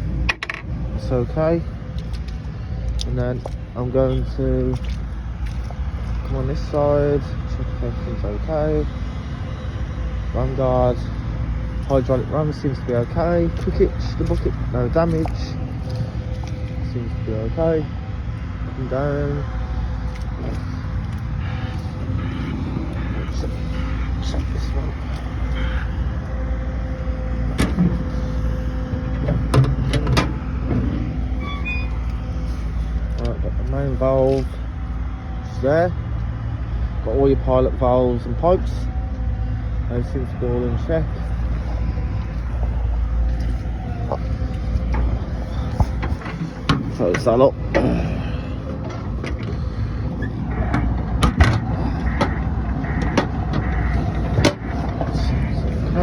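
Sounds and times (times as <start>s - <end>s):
steady low rumble: 0.0s - 56.0s
metallic clicks and knocks: 0.2s - 0.7s.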